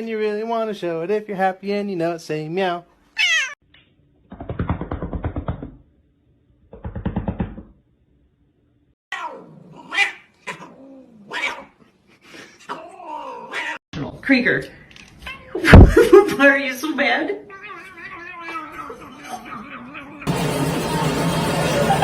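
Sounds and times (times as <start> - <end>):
cat yowling: 3.2 - 3.6, 9.1 - 11.8, 12.7 - 13.8, 17.5 - 20.3
cat growling: 9.1 - 11.9, 12.6 - 13.8, 17.5 - 20.3.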